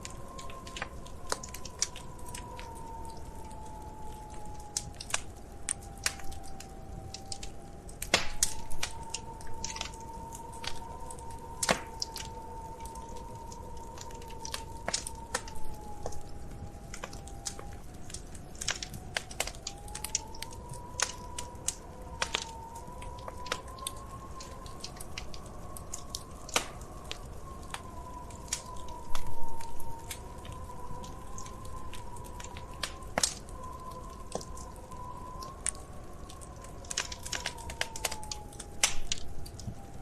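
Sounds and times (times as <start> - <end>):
wood fire crackling and popping: 0.0 - 40.0
thin wavering whistle: 19.4 - 40.0.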